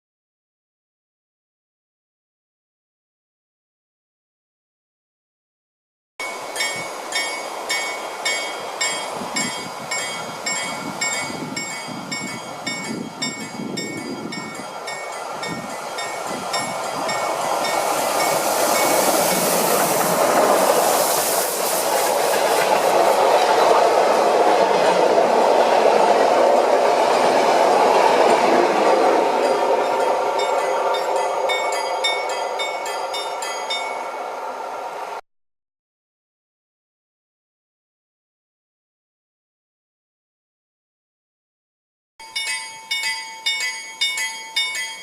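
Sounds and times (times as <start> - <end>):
level crossing warning bell ringing: 6.2 - 19.1, 29.4 - 34.2, 42.2 - 45.0
train wheels clattering on rails: 6.2 - 34.0
steam train passing: 6.2 - 35.2, 42.2 - 45.0.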